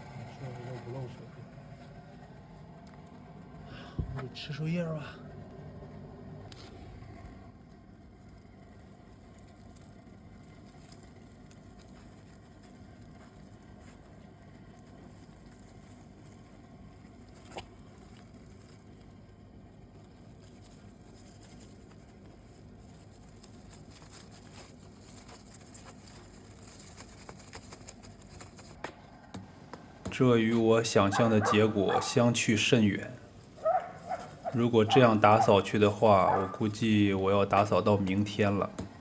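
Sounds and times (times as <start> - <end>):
leaf vacuum humming: 0.0 - 39.0
dry leaves pattering: 7.9 - 28.8, 29.6 - 39.0.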